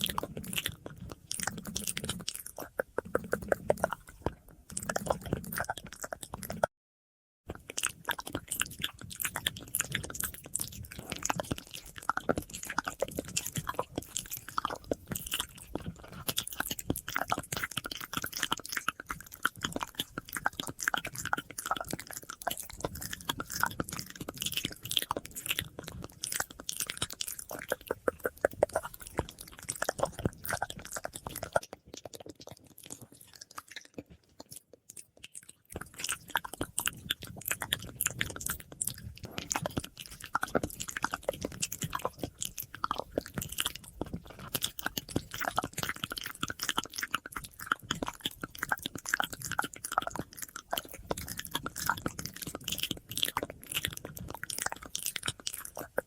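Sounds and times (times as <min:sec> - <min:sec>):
wet mouth clicks and smacks: 0:00.0 - 0:06.7, 0:07.5 - 0:56.0.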